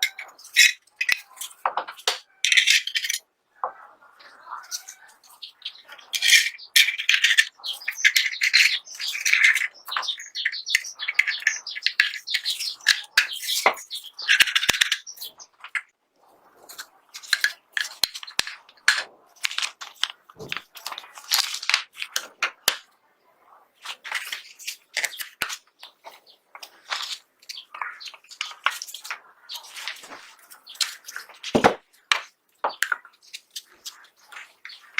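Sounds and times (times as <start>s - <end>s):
clicks and scrapes of pistol parts: 0.0s - 3.2s, 4.6s - 5.0s, 6.0s - 16.0s, 16.6s - 22.9s, 23.8s - 34.9s.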